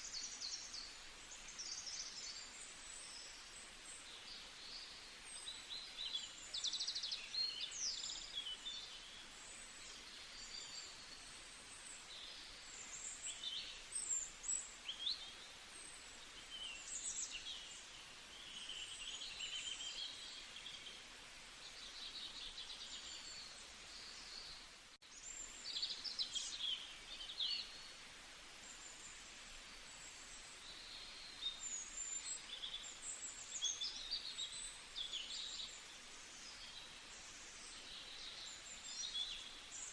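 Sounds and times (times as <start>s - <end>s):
steady background hiss: 0.0s - 39.9s
songbirds chirping and singing: 21.7s - 27.9s.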